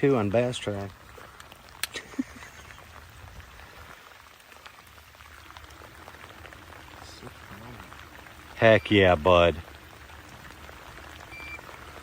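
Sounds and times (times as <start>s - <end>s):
water pattering: 0.0s - 12.0s
small ticks: 1.2s - 2.8s.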